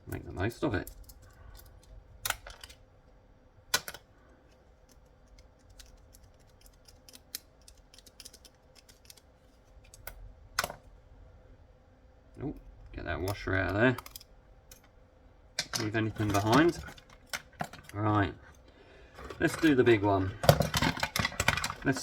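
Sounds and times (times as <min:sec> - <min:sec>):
plastic parts clicking and tapping: 0:00.1 - 0:02.8, 0:03.7 - 0:09.2, 0:13.2 - 0:14.9, 0:15.6 - 0:18.0, 0:19.2 - 0:22.0.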